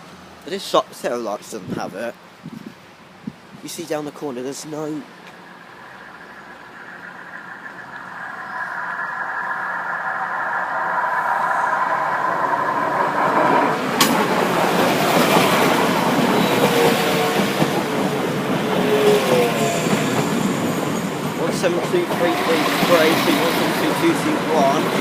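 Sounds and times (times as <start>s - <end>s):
thin wheel squeal: 5.3s - 13.8s
train wheels clattering on rails: 12.9s - 25.0s.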